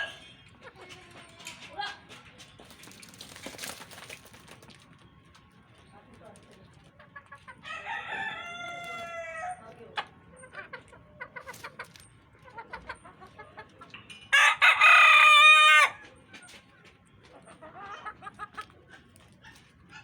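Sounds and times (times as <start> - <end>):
hens clucking softly: 6.8 - 14.0, 15.5 - 20.0
rooster crowing: 7.6 - 9.6, 14.3 - 16.0.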